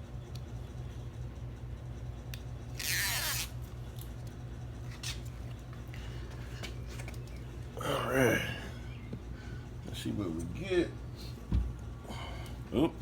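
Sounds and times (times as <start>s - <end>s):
tape strip ripping: 2.7s - 4.1s.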